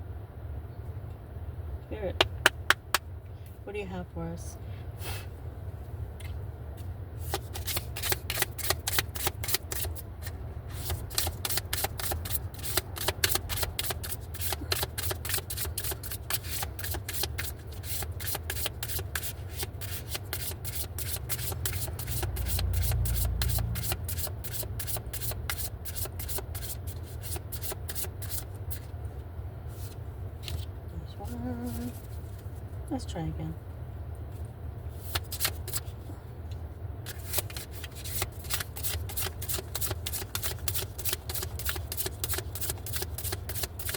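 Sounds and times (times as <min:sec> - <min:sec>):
cards being shuffled: 0:07.2 - 0:28.9, 0:29.8 - 0:30.7, 0:35.0 - 0:36.0, 0:37.0 - 0:43.9.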